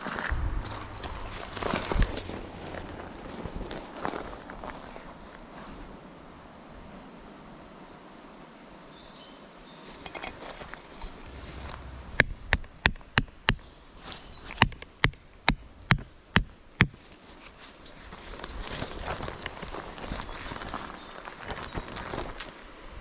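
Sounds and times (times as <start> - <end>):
sharp hammering blows: 11.2 - 13.8.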